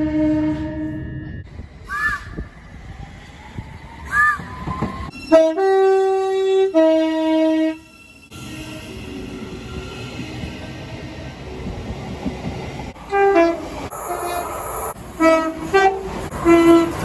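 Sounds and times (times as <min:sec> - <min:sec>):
two-tone train horn: 0:00.0 - 0:01.1, 0:05.1 - 0:07.9, 0:13.1 - 0:14.4, 0:15.2 - 0:17.0.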